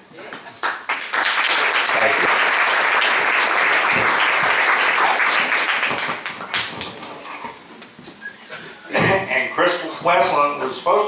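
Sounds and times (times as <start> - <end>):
audience applause: 0.6 - 7.3.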